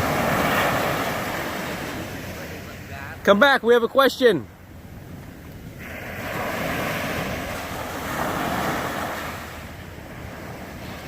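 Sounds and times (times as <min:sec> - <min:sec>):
ocean surf breaking on beach: 0:00.0 - 0:11.0.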